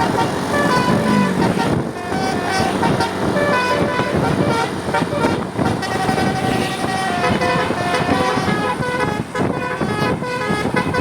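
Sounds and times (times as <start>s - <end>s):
musical air horns playing tune: 0.0s - 11.0s
road noise: 0.0s - 11.0s.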